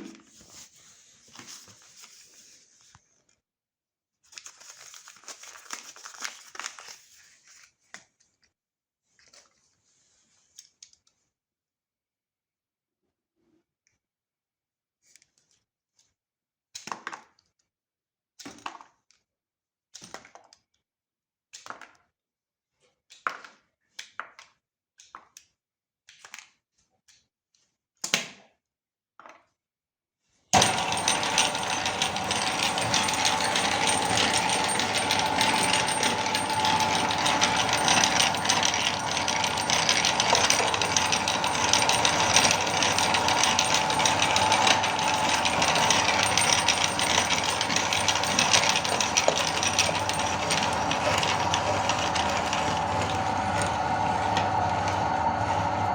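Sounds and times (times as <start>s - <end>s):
meat grinder whining and rattling: 30.6s - 55.9s
short clatters: 30.6s - 55.9s.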